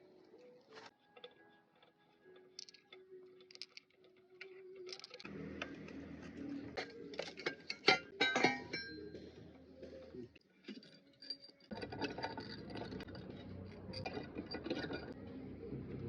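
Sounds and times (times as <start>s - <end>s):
metal tools clinking: 1.2s - 5.7s, 6.4s - 9.3s, 10.5s - 15.2s.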